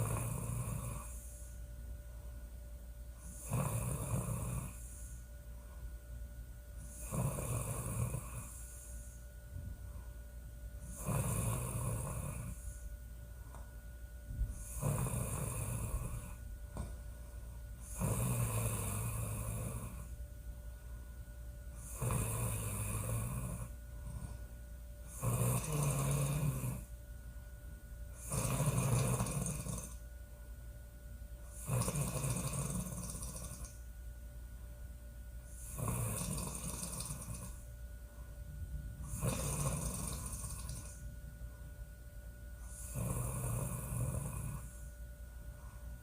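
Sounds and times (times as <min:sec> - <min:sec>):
woman snoring loudly: 0:00.0 - 0:01.3, 0:03.2 - 0:05.2, 0:06.8 - 0:08.9, 0:10.8 - 0:12.8, 0:14.6 - 0:16.4, 0:17.8 - 0:20.1, 0:21.8 - 0:23.7, 0:25.1 - 0:26.9, 0:28.2 - 0:30.0, 0:31.5 - 0:33.8, 0:35.6 - 0:37.6, 0:39.0 - 0:41.0, 0:42.7 - 0:44.8.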